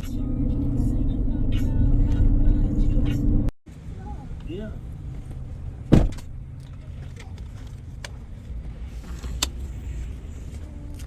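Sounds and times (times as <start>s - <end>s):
vehicle rumble: 0.0s - 11.0s
loud thump: 5.9s - 6.3s.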